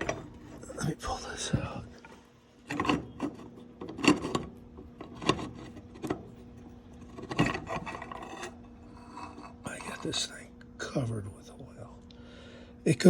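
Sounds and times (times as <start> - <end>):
light metal scraping: 2.0 - 10.3.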